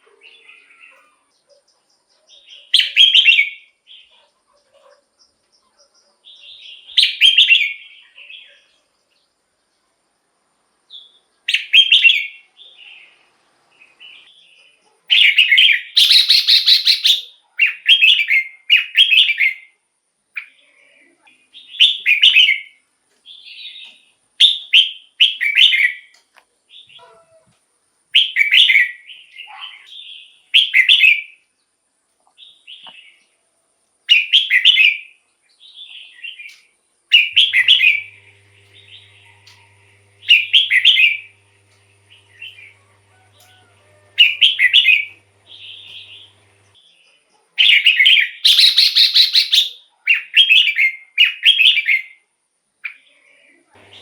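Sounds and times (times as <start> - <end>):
harsh buzzy bird call: 15.2 - 17.7, 37.1 - 46.8, 48.4 - 49.8, 53.8 - 54.0
bird whistled phrases: 15.5 - 18.3, 48.0 - 51.5.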